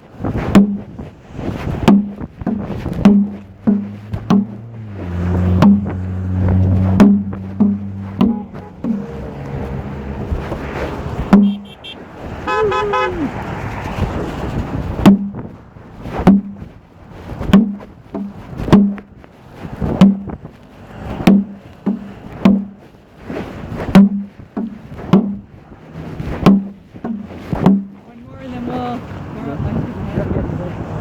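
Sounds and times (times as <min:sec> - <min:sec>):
dull thuds: 0:00.0 - 0:13.4, 0:14.0 - 0:28.9
horn honking: 0:03.1 - 0:13.8.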